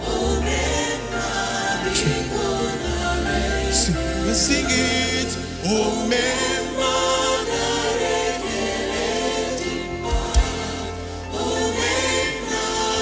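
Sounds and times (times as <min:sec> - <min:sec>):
gospel voices singing: 0:00.0 - 0:13.0
band with steady bass: 0:09.8 - 0:11.9
low drum thump: 0:10.1 - 0:10.9.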